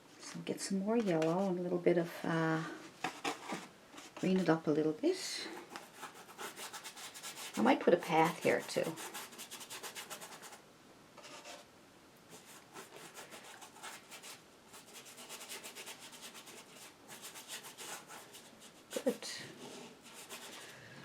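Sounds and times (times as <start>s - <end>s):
paintbrush scrubbing on canvas: 5.5s - 10.6s, 12.3s - 20.7s.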